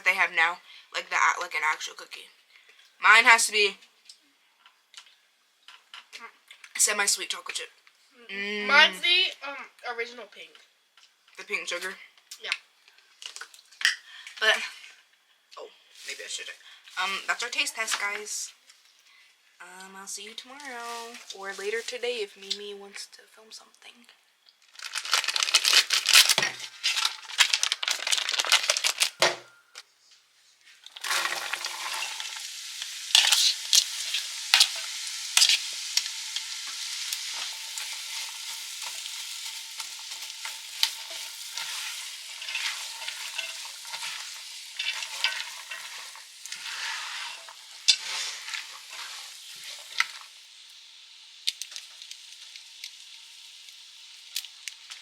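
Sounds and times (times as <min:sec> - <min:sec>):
food sizzling in a pan: 0:00.0 - 0:07.8, 0:10.2 - 0:23.2, 0:24.5 - 0:29.3, 0:30.6 - 0:55.0
sharp crackling pops: 0:24.5 - 0:29.4, 0:30.8 - 0:46.7, 0:51.4 - 0:55.0.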